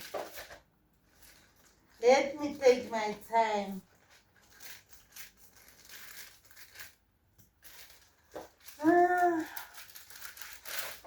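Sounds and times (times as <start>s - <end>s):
packaging rustling: 0.0s - 11.0s
woman humming: 8.8s - 9.7s.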